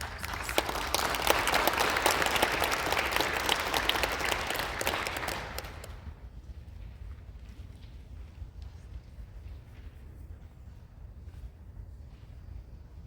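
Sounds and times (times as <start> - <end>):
audience applauding: 0.0 - 6.1.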